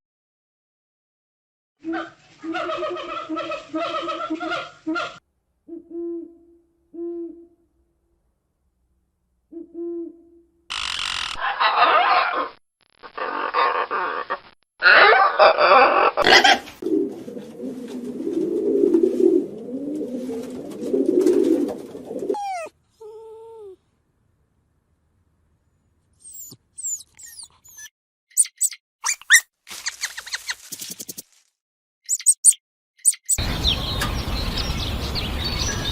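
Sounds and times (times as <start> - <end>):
low hooting calls: 13.2 - 23.8
small birds chirping: 22.4 - 23.7, 25.7 - 31.2, 32.1 - 35.9
buzzy bird trill: 26.3 - 31.2, 32.1 - 35.9.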